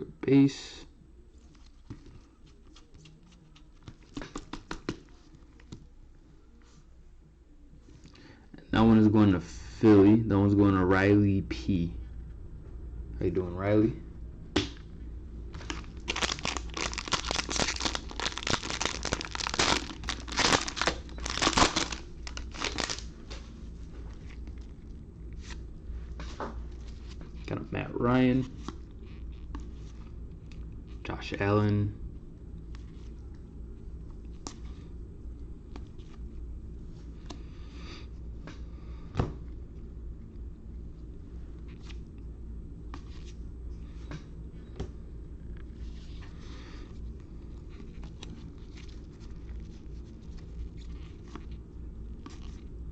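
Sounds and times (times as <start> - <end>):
low steady hum: 0.0 - 52.9
trading cards clicking and rustling: 1.6 - 5.8, 15.6 - 23.0
plastic wrapper tearing and crinkling: 15.6 - 23.1.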